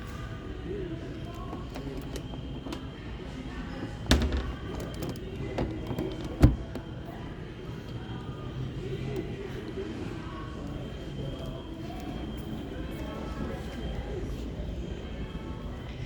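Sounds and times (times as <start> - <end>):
background hubbub: 0.0 - 16.0
loud thumps: 4.1 - 5.0.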